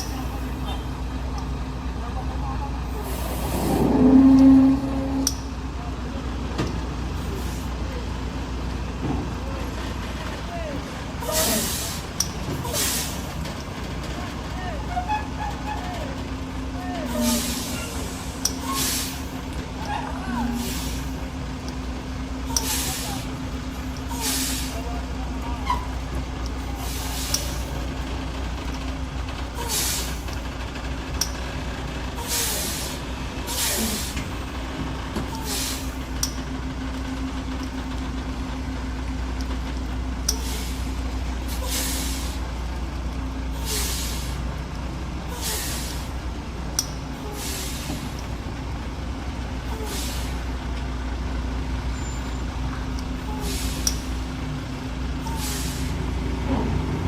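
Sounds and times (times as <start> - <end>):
truck engine low hum: 0.0 - 57.0
air brake hisses: 2.9 - 5.4, 11.2 - 13.3, 17.0 - 19.4, 20.4 - 21.2, 22.5 - 23.3, 24.1 - 24.8, 26.8 - 27.7, 29.6 - 30.3, 32.2 - 34.3, 35.4 - 36.0, 40.3 - 40.9, 41.5 - 42.4, 43.6 - 44.4, 45.3 - 46.2, 47.2 - 48.2, 49.7 - 50.5, 53.2 - 54.2, 55.2 - 56.1.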